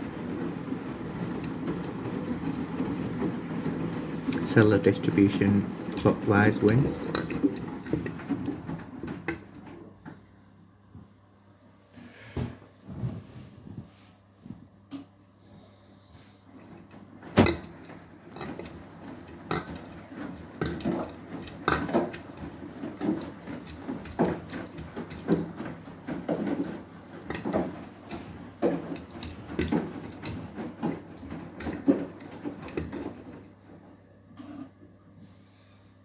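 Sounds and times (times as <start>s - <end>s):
washing machine motor hum: 0.0s - 36.0s
wet laundry thudding and sloshing: 17.1s - 33.4s.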